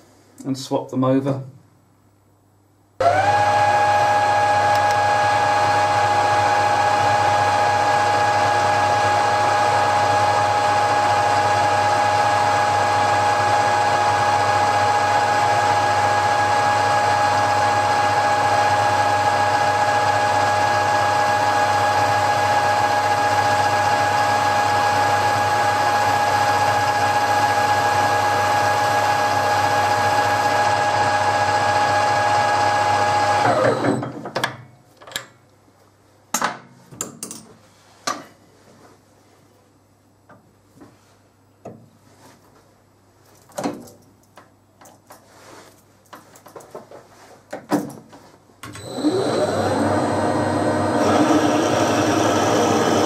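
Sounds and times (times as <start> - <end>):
low mains hum: 0.0 - 3.1, 33.4 - 51.0
machine tool motor whine: 33.2 - 34.1, 48.7 - 53.0.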